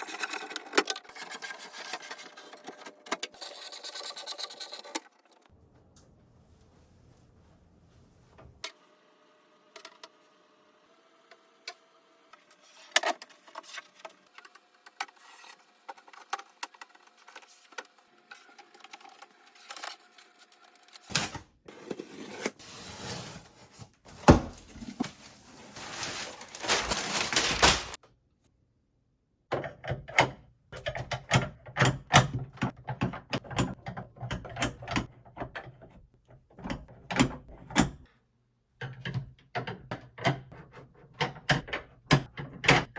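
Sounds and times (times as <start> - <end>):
rustling and scraping: 21.7 - 28.0
hardware clicking and knocking: 29.5 - 38.0, 38.8 - 42.9.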